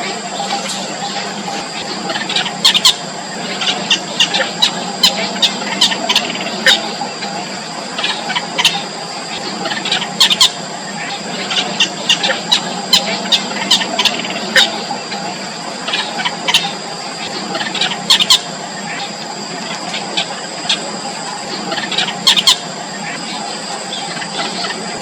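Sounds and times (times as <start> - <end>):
nestling birds cheeping: 0.0 - 25.0.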